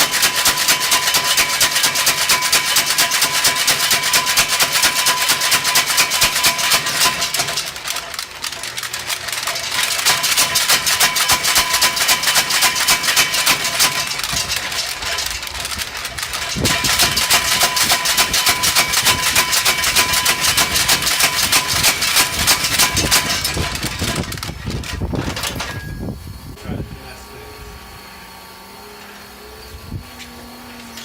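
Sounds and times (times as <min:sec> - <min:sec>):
power hammer striking steel: 0:00.0 - 0:24.3.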